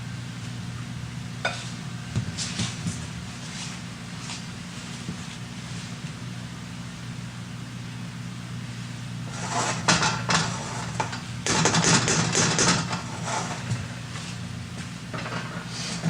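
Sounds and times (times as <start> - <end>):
steady low hum: 0.0 - 16.0
pan and utensils clattering: 9.6 - 13.7, 15.1 - 16.0.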